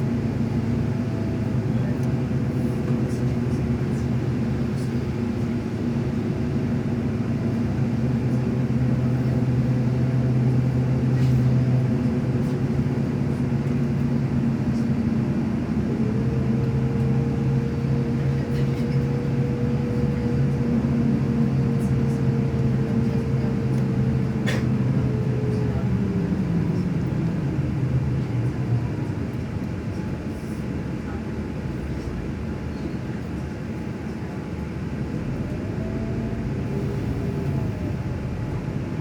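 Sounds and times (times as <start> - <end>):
vehicle drone: 35.0 - 39.0.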